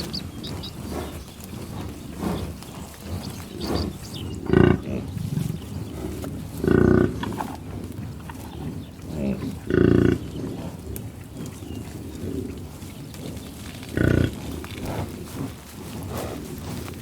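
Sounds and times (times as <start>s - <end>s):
cattle mooing: 3.3s - 7.6s, 8.3s - 10.7s.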